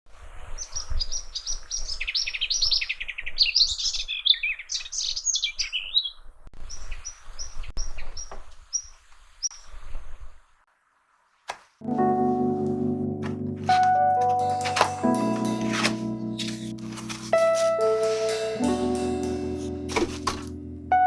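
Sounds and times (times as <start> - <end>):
songbirds twittering and chirping: 0.2 - 10.6.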